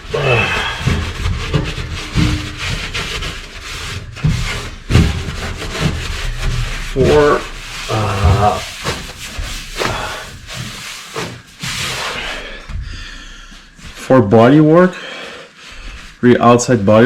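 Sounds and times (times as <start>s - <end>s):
hand scrubbing tire: 0.0s - 14.7s.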